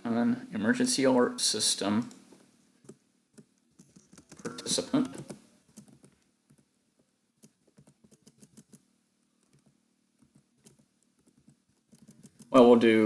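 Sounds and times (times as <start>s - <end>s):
computer keyboard typing: 2.8s - 6.6s, 7.4s - 8.8s, 10.3s - 12.5s.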